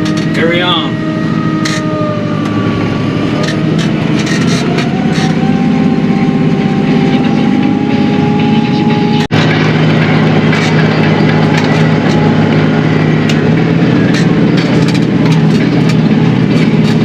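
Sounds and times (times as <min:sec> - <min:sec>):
engine running: 0:00.0 - 0:17.0.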